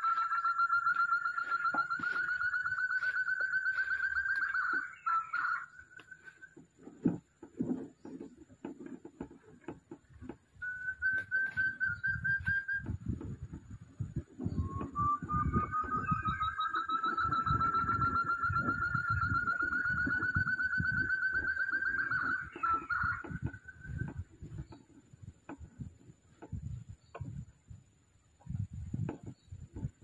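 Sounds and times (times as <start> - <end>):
quail whistled trill: 0.0 - 6.6, 10.6 - 13.5, 14.1 - 24.8.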